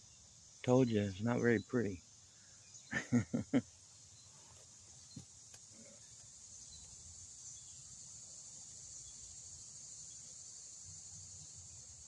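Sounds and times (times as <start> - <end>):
crickets chirping: 0.0 - 12.0
man laughing: 2.9 - 3.8.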